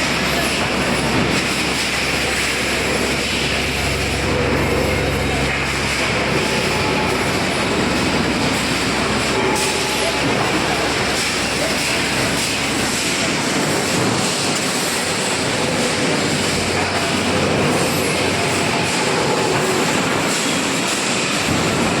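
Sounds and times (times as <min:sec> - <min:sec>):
machinery hissing: 0:00.0 - 0:21.5
faint hums: 0:02.3 - 0:12.3.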